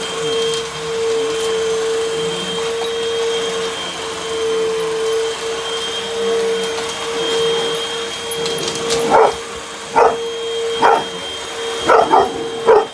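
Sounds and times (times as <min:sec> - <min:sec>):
vacuum cleaner running: 0:00.0 - 0:12.9
puppy barking: 0:08.4 - 0:12.9.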